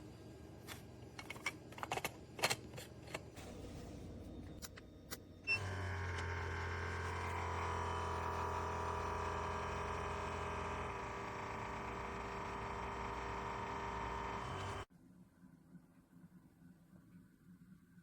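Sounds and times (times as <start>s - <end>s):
electric pump motor hum: 5.5s - 14.9s.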